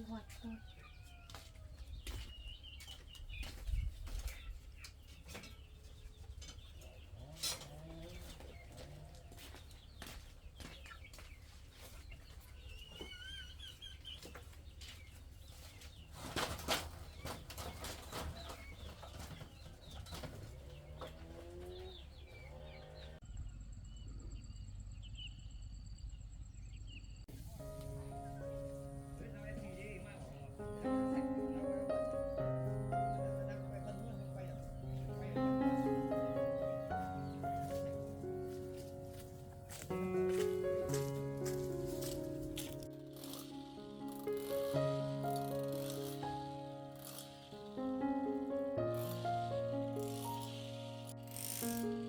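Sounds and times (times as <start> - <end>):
chickens clucking: 2.9 - 23.2, 27.3 - 42.7
knocks and rustles: 14.3 - 21.7.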